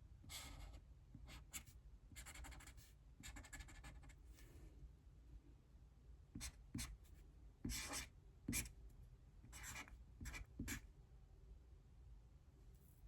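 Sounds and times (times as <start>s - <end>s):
writing tool scratching on paper: 7.7s - 8.7s.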